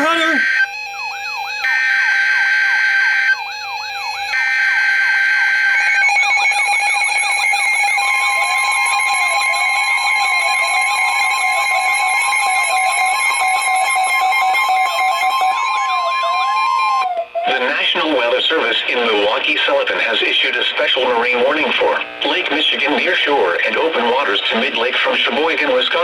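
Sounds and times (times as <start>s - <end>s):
wailing siren: 0.0s - 17.9s.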